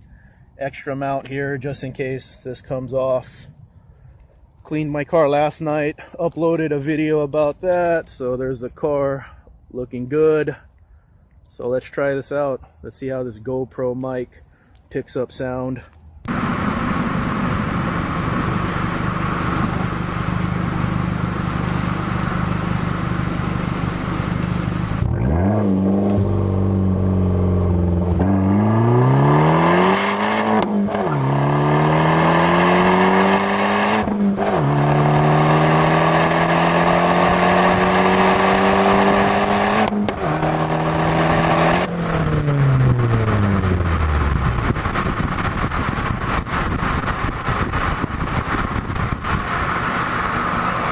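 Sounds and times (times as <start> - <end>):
car engine and exhaust revving: 16.2 - 50.9.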